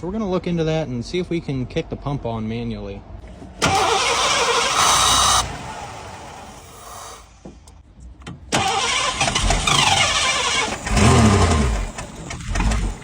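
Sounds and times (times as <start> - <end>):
engine starter clicks: 3.5 - 7.2, 8.5 - 13.0
car engine revving: 3.6 - 7.2, 8.8 - 13.0.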